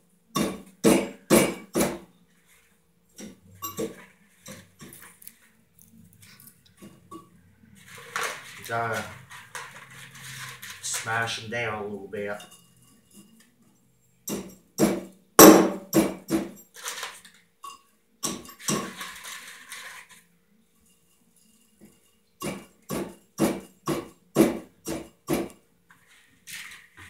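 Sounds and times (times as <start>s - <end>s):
metal rattling and scraping: 6.8s - 11.5s.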